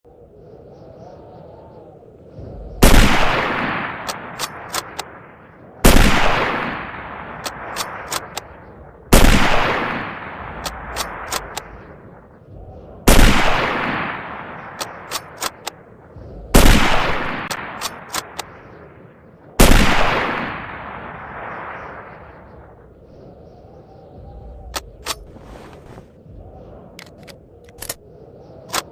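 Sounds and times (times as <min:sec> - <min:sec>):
rifle shots with echo: 0:02.8 - 0:11.8, 0:13.1 - 0:15.8, 0:16.5 - 0:18.5, 0:19.6 - 0:22.1
rifle bolt metallic clicks: 0:04.0 - 0:05.1, 0:07.4 - 0:08.5, 0:10.6 - 0:11.7, 0:14.8 - 0:15.8, 0:17.6 - 0:18.5, 0:27.0 - 0:28.0, 0:28.7 - 0:28.9.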